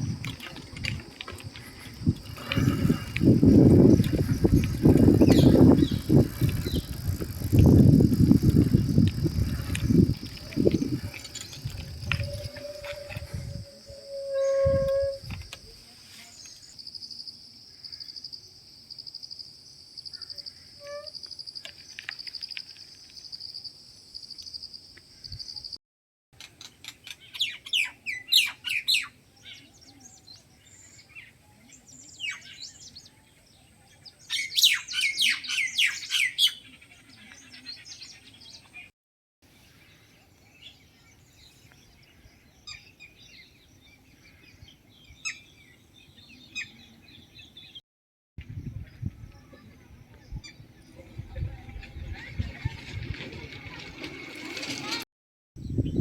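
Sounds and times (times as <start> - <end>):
birds chirping: 0.0 - 15.2.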